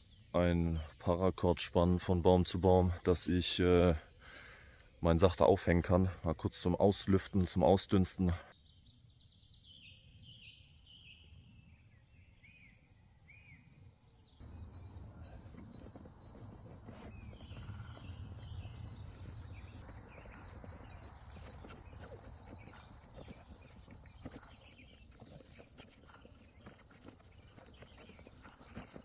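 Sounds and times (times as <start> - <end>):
birds singing and chirping: 0.0 - 29.0
rustling with small knocks: 14.4 - 29.0.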